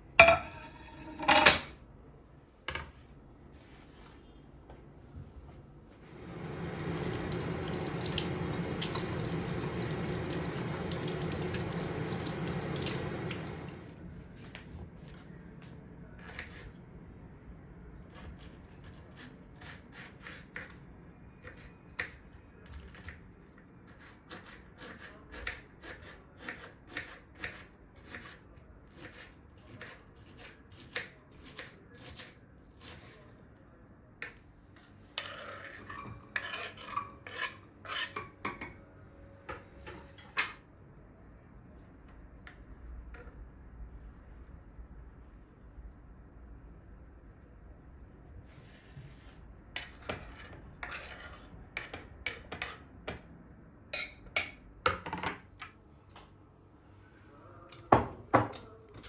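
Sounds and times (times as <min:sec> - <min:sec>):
dishes and cutlery clinking: 0:00.2 - 0:01.8, 0:35.5 - 0:38.8, 0:54.0 - 0:55.3.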